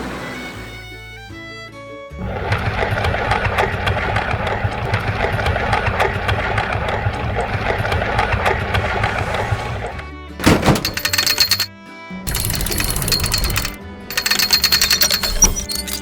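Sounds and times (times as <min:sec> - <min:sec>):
clattering engine running: 0:02.2 - 0:11.7, 0:12.3 - 0:16.0.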